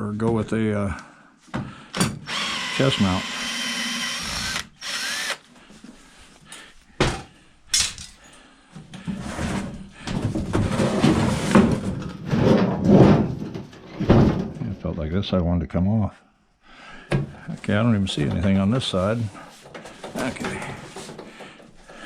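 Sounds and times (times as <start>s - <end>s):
power drill running: 2.2s - 5.4s.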